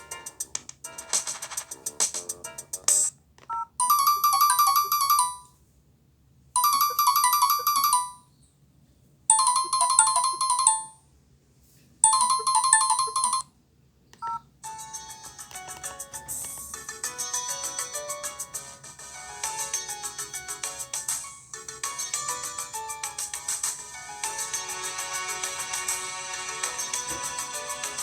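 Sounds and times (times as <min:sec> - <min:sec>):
phone ringtone melody: 0:03.5 - 0:05.5, 0:06.6 - 0:08.2, 0:09.3 - 0:11.0, 0:12.0 - 0:13.5, 0:14.2 - 0:18.3.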